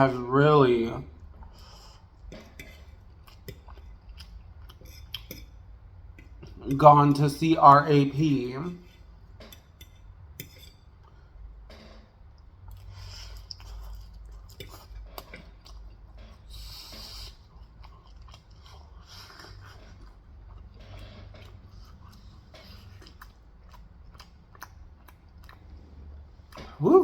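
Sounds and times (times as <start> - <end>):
person chewing crunchy food: 0.8 - 5.6, 12.1 - 26.8.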